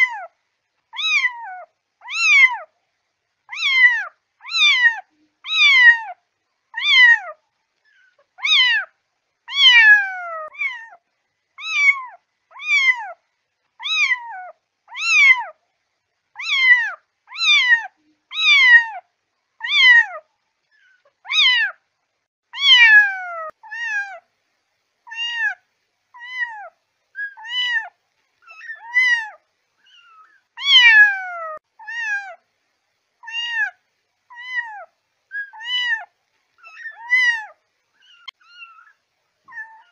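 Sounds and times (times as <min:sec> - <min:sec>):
kitten meowing: 0:01.0 - 0:02.7, 0:03.5 - 0:06.2, 0:06.8 - 0:07.4, 0:08.4 - 0:08.9, 0:09.5 - 0:11.0, 0:11.6 - 0:13.2, 0:13.8 - 0:15.6, 0:16.4 - 0:19.0, 0:19.6 - 0:20.2, 0:21.2 - 0:21.8, 0:22.6 - 0:24.2, 0:25.1 - 0:25.6, 0:26.2 - 0:32.4, 0:33.2 - 0:39.9.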